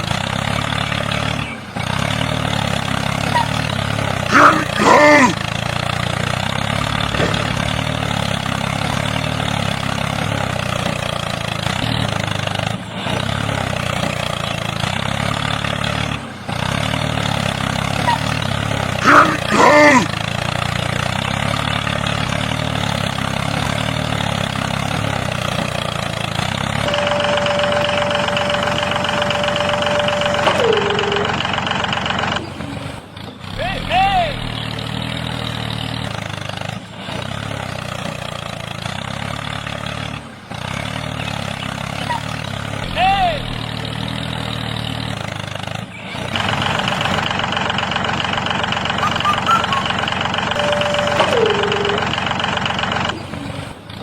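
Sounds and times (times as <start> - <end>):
heavy machine engine droning: 0.0 - 54.0
steady held tone: 26.9 - 32.8, 49.0 - 53.3
short loud call: 49.0 - 52.1.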